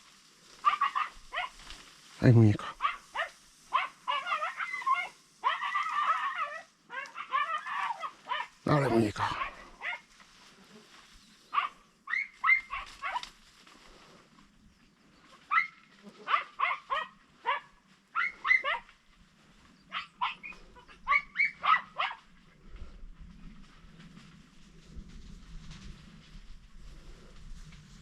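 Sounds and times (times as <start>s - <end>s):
hounds yelping barks: 0.6s - 1.7s, 2.7s - 10.1s, 11.5s - 13.3s, 15.4s - 19.0s, 19.8s - 22.5s.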